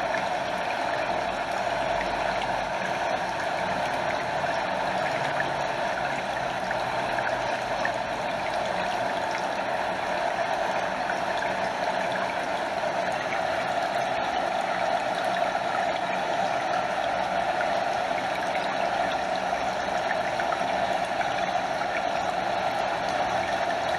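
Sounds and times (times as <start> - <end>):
water flowing over small waterfall: 0.0 - 23.9.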